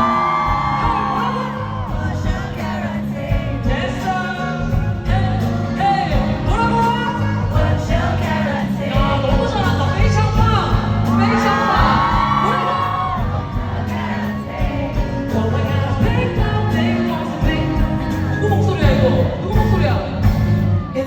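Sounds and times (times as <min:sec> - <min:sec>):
whoops: 0:00.0 - 0:02.1, 0:11.0 - 0:13.4
pulsing bass beat: 0:00.0 - 0:20.9
pop song with singing: 0:00.0 - 0:21.0.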